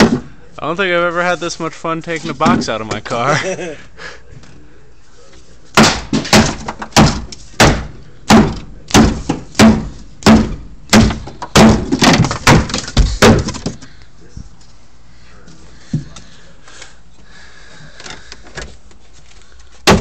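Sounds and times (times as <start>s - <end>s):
loud cracking blows on wood box: 0.0s - 0.3s, 5.8s - 13.8s.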